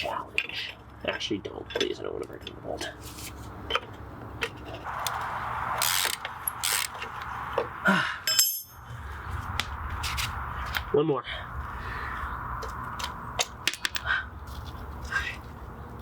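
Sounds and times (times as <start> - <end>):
ratchet wrench clicking: 5.8 - 7.1.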